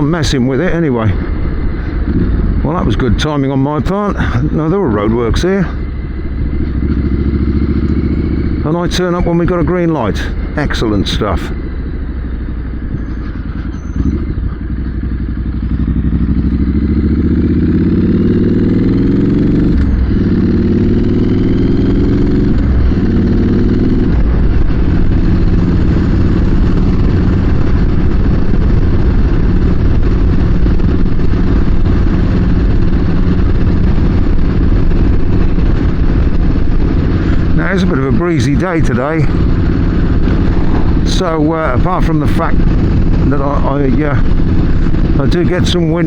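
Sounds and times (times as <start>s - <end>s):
motorcycle engine accelerating: 0.0s - 46.0s
wind noise on microphone: 12.7s - 14.9s, 17.6s - 46.0s.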